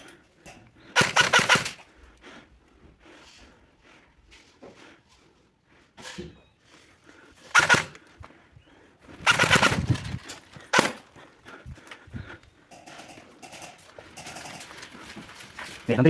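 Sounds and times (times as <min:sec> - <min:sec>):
airsoft rifle bursts: 0:00.9 - 0:01.9, 0:07.5 - 0:08.1, 0:09.2 - 0:11.2.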